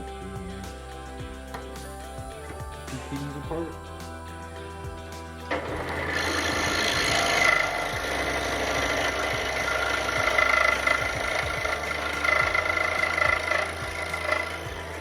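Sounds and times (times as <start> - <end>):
scroll saw cutting wood: 5.5 - 15.0.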